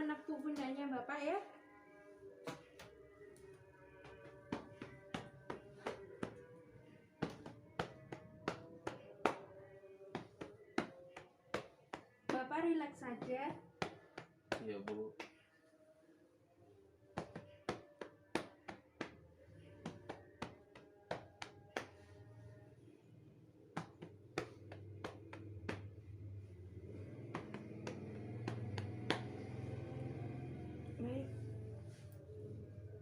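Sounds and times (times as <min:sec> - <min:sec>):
hand patting on back: 0:17.2 - 0:22.1, 0:23.7 - 0:26.1, 0:27.2 - 0:29.6.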